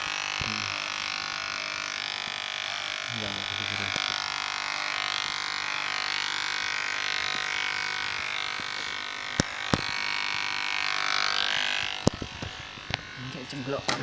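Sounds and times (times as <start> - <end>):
electric hair clipper buzzing: 0.0 - 14.0
sharp clicks: 9.2 - 10.5.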